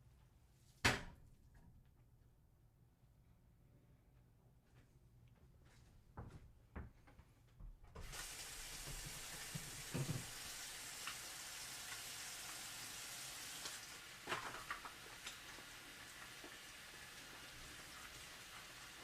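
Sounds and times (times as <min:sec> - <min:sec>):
steady hiss: 0:08.0 - 0:19.0.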